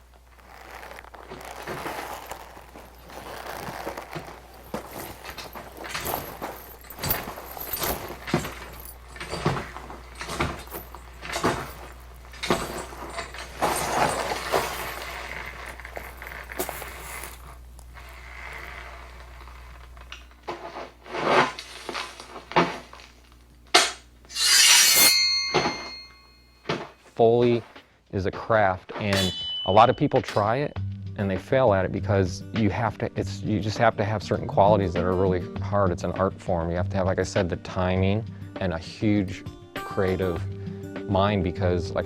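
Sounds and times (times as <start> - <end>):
steady low hum: 0.0 - 28.4.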